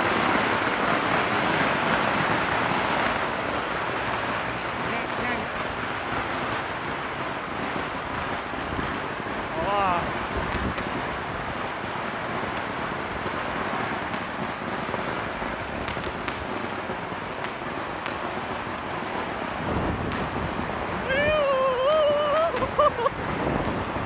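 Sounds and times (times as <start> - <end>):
firecrackers crackling: 0.0 - 24.0
firework bangs: 0.0 - 24.0.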